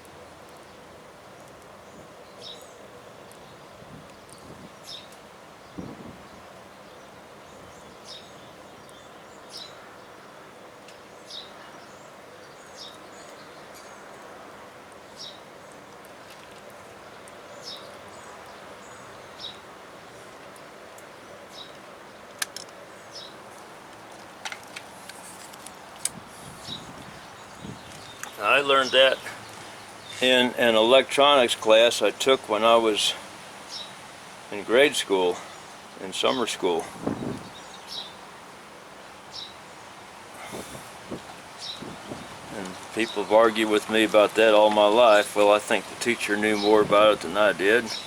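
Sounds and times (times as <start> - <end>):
outdoor background hiss: 0.0 - 48.0
bird chirping: 26.4 - 38.2, 41.6 - 48.0.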